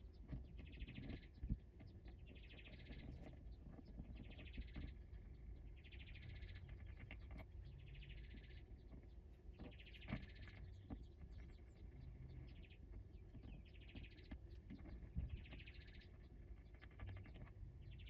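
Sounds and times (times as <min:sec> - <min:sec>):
faint clicks and taps: 0:08.8 - 0:18.0.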